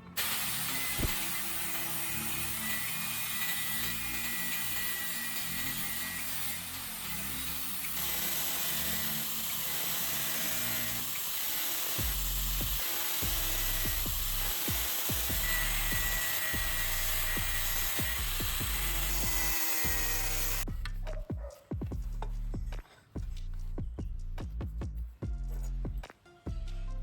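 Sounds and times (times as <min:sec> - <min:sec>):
power grinder grinding metal: 0:00.0 - 0:20.7
background music: 0:00.0 - 0:27.0.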